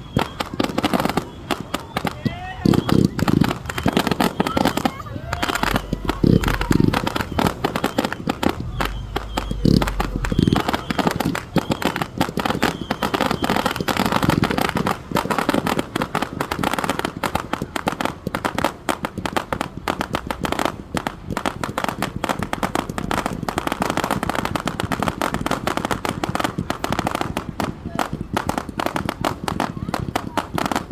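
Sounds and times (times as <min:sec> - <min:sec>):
fireworks crackling barrage: 0:00.0 - 0:30.9.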